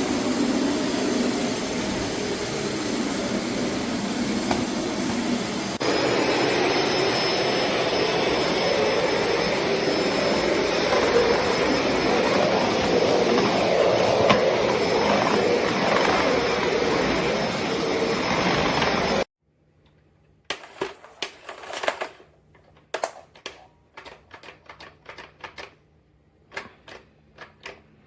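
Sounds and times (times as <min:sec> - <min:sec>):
vacuum cleaner running: 0:00.0 - 0:19.3
clicks and knocks of parts handled: 0:19.8 - 0:25.8.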